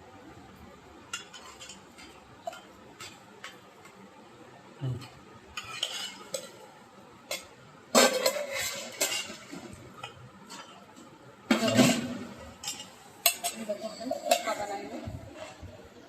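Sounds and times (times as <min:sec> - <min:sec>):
utensil scraping metal pot: 0:01.1 - 0:03.6, 0:05.5 - 0:06.7, 0:07.3 - 0:10.8.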